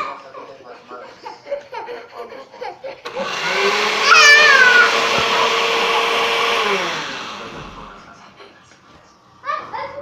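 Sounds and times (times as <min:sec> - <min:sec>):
electric blender whirring: 0:03.0 - 0:08.0
short high falling cry: 0:04.0 - 0:05.0.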